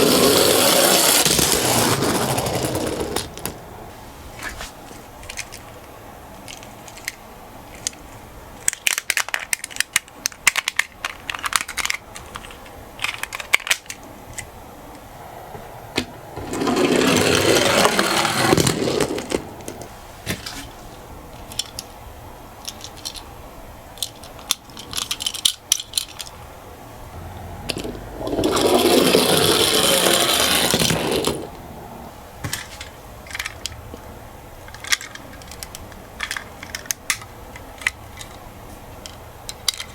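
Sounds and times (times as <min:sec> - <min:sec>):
toy car rolling down slope: 0:00.0 - 0:03.6, 0:16.4 - 0:19.9, 0:27.4 - 0:31.6
toy cars clicking and clinking: 0:05.2 - 0:05.8, 0:06.4 - 0:14.5, 0:21.4 - 0:22.0, 0:22.6 - 0:23.3, 0:24.0 - 0:26.4, 0:27.7 - 0:31.5, 0:32.8 - 0:33.8, 0:34.6 - 0:38.4, 0:39.0 - 0:39.9.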